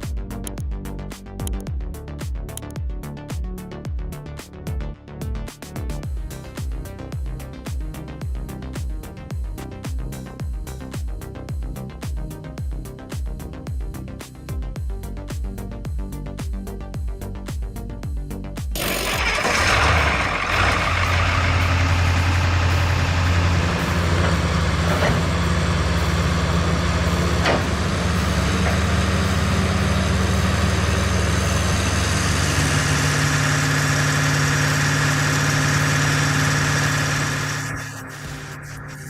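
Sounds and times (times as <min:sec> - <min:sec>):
heavy machine engine hum: 0:18.8 - 0:39.0.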